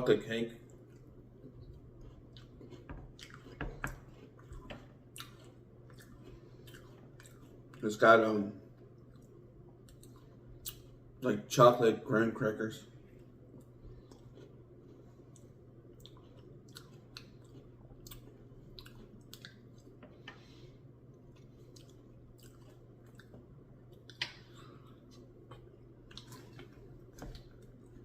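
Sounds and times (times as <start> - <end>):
close-up chewing: 0.6 - 11.2, 12.9 - 28.0.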